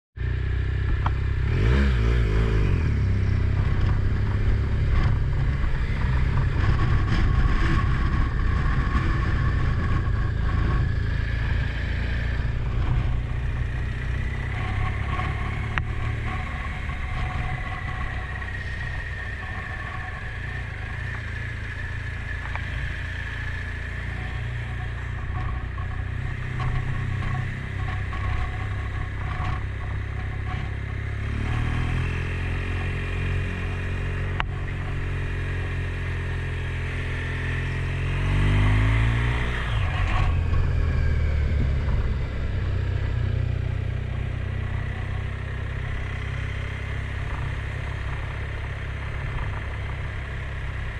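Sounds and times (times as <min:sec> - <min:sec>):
vehicle engine and road rumble: 0:00.2 - 0:50.9
faint drifting tone: 0:04.9 - 0:33.0.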